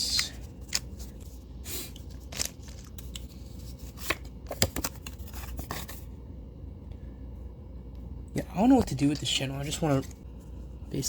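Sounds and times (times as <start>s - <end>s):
foil wrapper crinkling and ripping: 2.2s - 3.0s.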